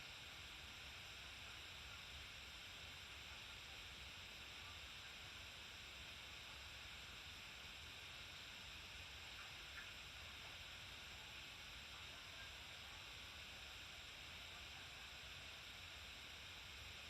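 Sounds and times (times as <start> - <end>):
faint low hum: 0.0 - 17.0.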